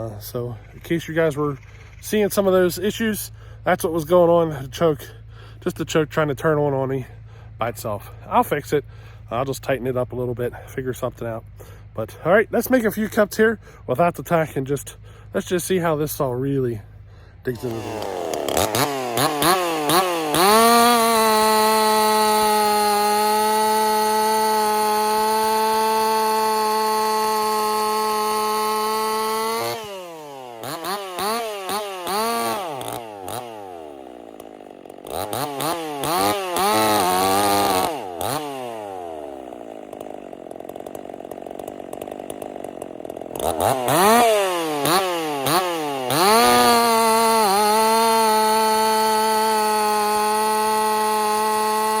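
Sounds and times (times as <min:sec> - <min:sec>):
chainsaw running and revving: 0:17.5 - 0:52.0.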